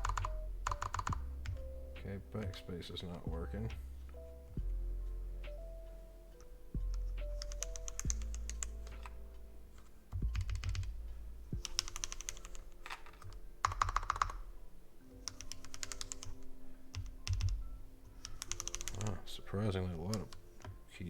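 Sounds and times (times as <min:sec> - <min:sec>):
mechanical keyboard keys clacking: 0:00.0 - 0:01.7, 0:06.4 - 0:09.2, 0:09.8 - 0:11.0, 0:11.6 - 0:14.5, 0:15.2 - 0:20.8.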